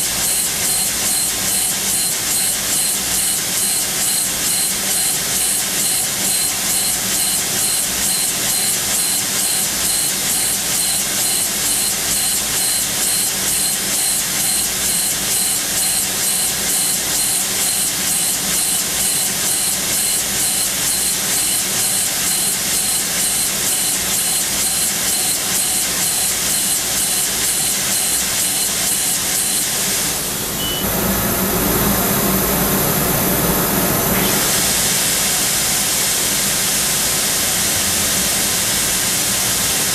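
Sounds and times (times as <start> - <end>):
drill spindle hissing with pulsing: 0.0 - 30.4.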